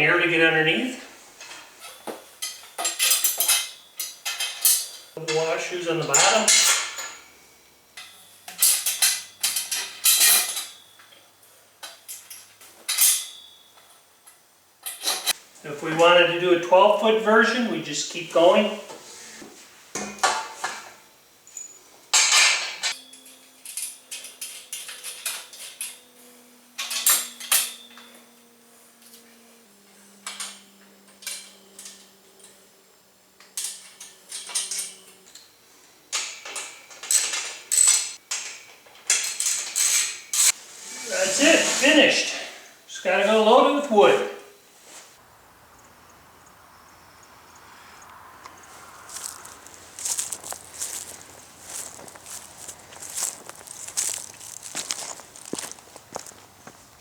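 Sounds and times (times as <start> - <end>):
metal parts clinking and rattling: 1.4 - 5.4, 6.0 - 7.3, 8.0 - 11.2, 11.8 - 13.7, 21.6 - 26.0, 26.8 - 28.1, 33.6 - 35.4, 36.1 - 40.5, 49.1 - 56.6.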